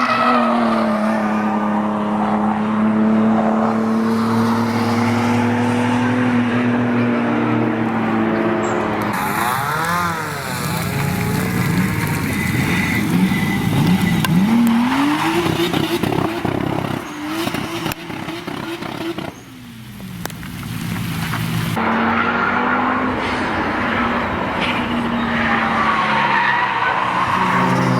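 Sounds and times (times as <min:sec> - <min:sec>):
car engine revving hard: 0:00.0 - 0:19.8
tyre squeal: 0:08.6 - 0:19.5, 0:23.2 - 0:27.9.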